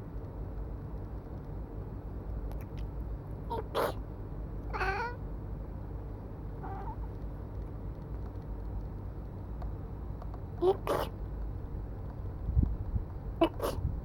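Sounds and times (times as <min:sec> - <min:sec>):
cat meowing: 0:04.7 - 0:05.2, 0:06.6 - 0:07.0.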